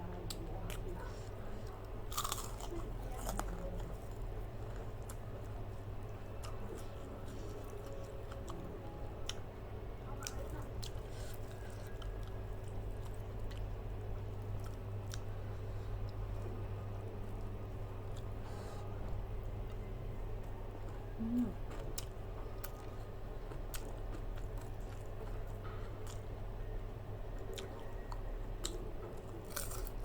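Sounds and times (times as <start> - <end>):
steady low hum: 0.0 - 30.0
person chewing food: 0.3 - 8.6, 10.2 - 16.4, 20.8 - 26.4, 27.4 - 30.0.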